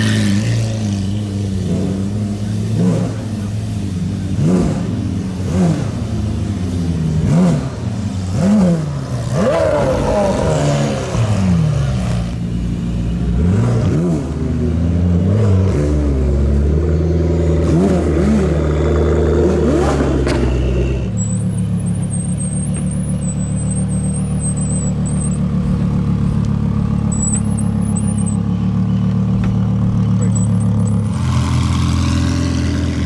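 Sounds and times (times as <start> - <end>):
car engine revving and idling: 0.0 - 33.0.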